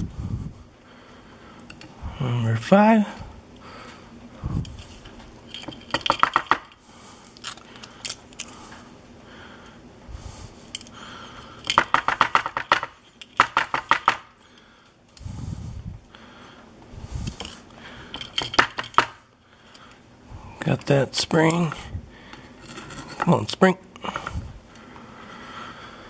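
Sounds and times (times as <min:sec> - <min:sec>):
metal lock parts clicking: 0:05.5 - 0:06.8, 0:18.1 - 0:19.2.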